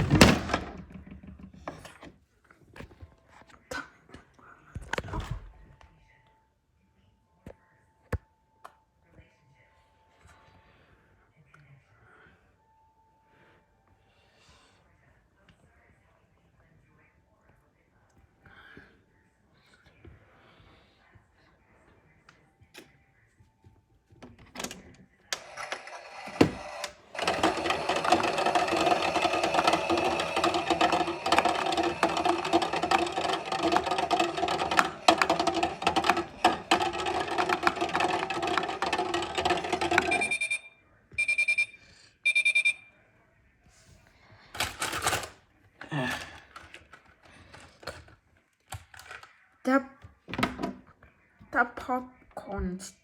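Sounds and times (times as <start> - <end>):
toy washing machine motor humming: 0.0 - 1.8, 25.4 - 40.6
short high beeps: 40.2 - 42.8.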